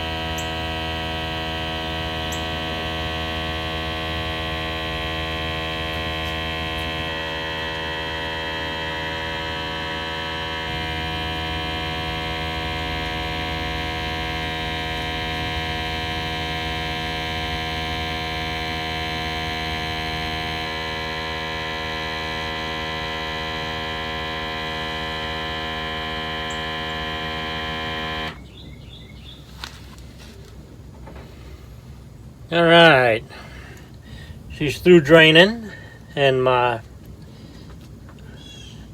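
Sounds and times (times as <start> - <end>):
electric pump humming: 0.0 - 28.4, 30.7 - 38.9.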